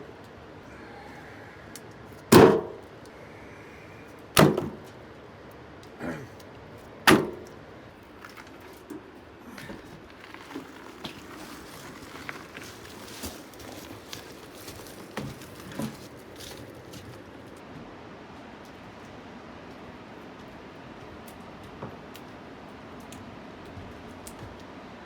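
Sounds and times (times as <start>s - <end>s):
firewood knocking onto pile: 2.3s - 2.8s, 4.4s - 4.9s, 7.1s - 7.5s, 9.6s - 17.3s.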